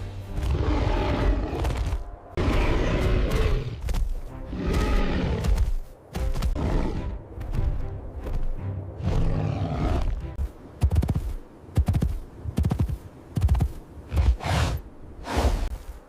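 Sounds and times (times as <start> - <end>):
dramatic background music: 0.0 - 11.4
deep creature roars: 0.4 - 3.8.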